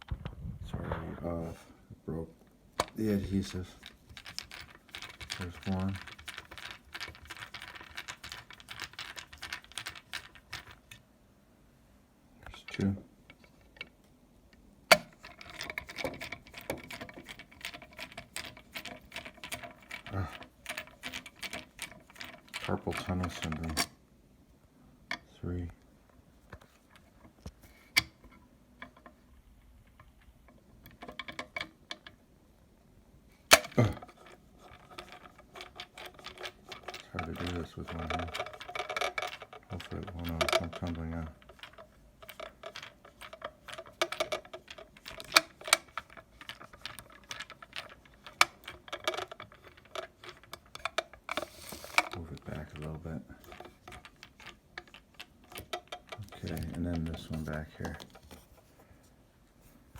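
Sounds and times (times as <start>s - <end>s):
screwdriver clicking and scraping: 40.4s - 52.8s.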